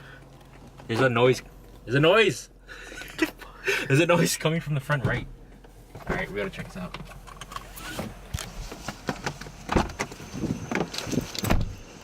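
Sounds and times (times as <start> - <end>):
car doors opening and shutting: 4.8 - 12.0
car door thumps: 5.0 - 6.3, 8.8 - 11.8.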